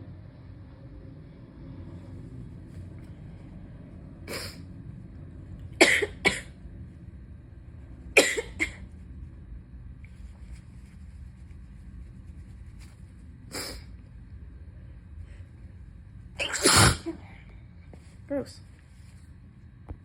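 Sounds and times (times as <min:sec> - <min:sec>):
person coughing: 0:05.8 - 0:06.5, 0:08.2 - 0:08.8, 0:16.4 - 0:17.2.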